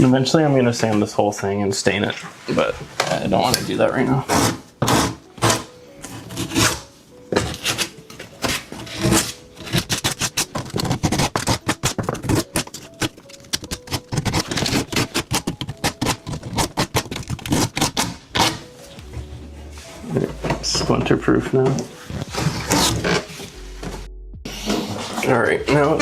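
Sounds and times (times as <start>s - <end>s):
sandpaper scraping wood: 4.3s - 6.9s, 8.7s - 13.0s, 13.9s - 18.6s.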